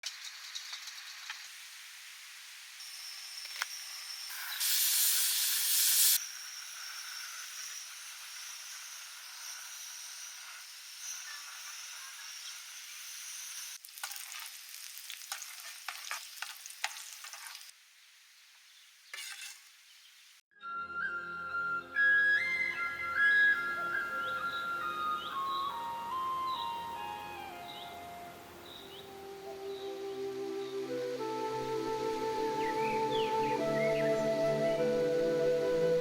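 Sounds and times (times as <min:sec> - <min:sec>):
food sizzling in a pan: 0:00.0 - 0:18.5.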